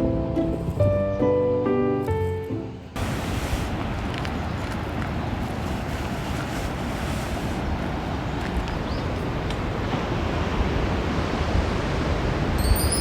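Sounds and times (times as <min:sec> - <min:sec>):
background music: 0:00.0 - 0:03.0
ocean surf: 0:02.8 - 0:13.0
wind buffeting microphone: 0:03.0 - 0:13.0.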